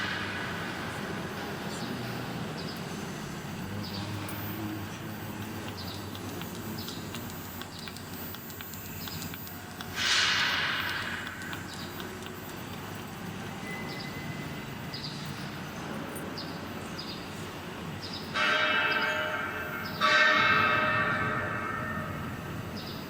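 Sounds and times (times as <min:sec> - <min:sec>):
faint steady noise: 0:00.0 - 0:23.0
light ticks: 0:05.2 - 0:14.2
ringing metallic clangs: 0:18.4 - 0:22.4.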